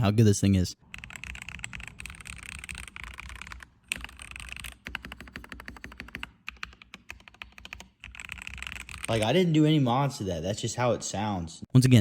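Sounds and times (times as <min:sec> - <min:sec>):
mechanical keyboard typing: 0:00.8 - 0:09.2.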